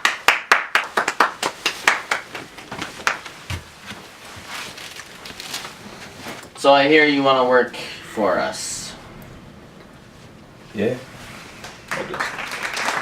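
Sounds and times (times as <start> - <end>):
hand clapping: 0.0 - 3.3, 11.6 - 13.0.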